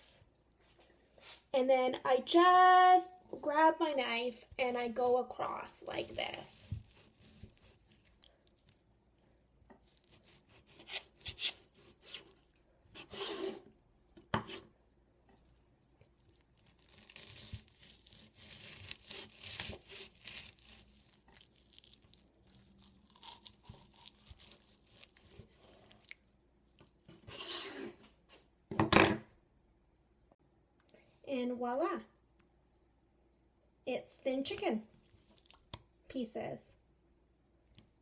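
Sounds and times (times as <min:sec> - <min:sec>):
knife slicing raw chicken: 0:06.6 - 0:08.1, 0:09.8 - 0:12.4, 0:16.7 - 0:21.2, 0:22.5 - 0:25.9.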